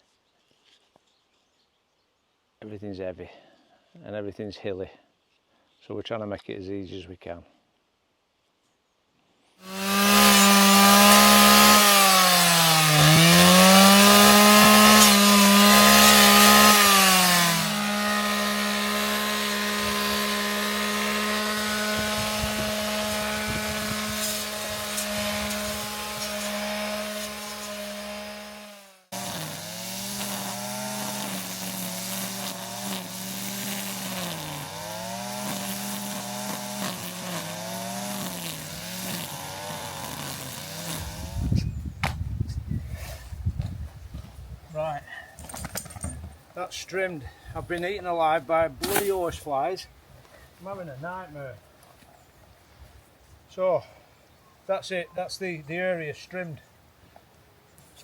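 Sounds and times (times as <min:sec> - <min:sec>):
strimmer cutting grass: 0:09.6 - 0:41.8, 0:48.8 - 0:49.4.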